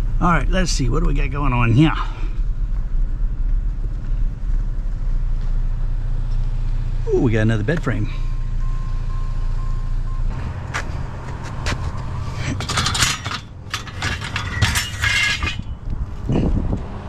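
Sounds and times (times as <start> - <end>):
vehicle engine idling: 0.0 - 17.0
metal bed frame parts clanking: 11.7 - 16.5.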